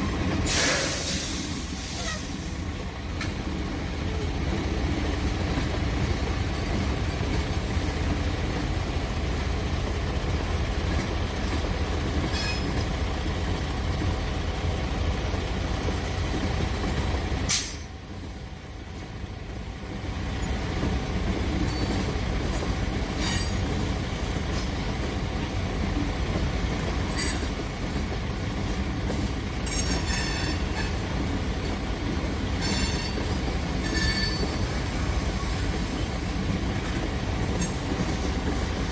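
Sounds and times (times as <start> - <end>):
freight train rumbling: 0.0 - 38.9
wheel squeals: 32.6 - 34.6.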